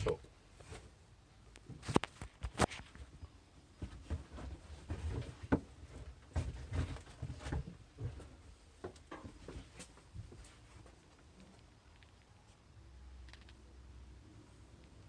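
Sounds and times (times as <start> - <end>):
rustling: 1.7 - 12.2.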